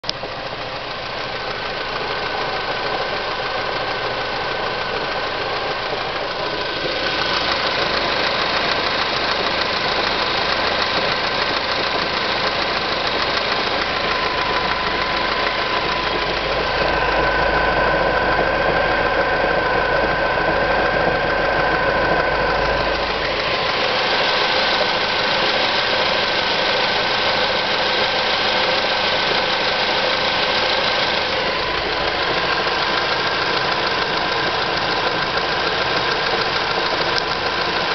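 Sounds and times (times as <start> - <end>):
car engine running: 0.0 - 37.9
deep rumble: 6.0 - 25.2
steady high tones: 6.7 - 19.3.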